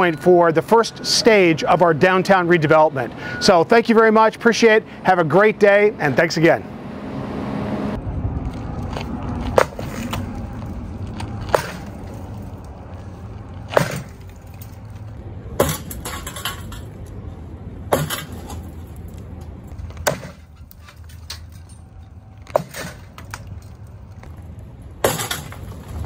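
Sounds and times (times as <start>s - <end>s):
low rumble: 6.6s - 26.0s
sledgehammer striking wall: 11.5s - 12.1s, 13.7s - 14.2s, 15.6s - 16.3s, 17.9s - 18.6s, 20.0s - 20.5s, 25.0s - 25.8s.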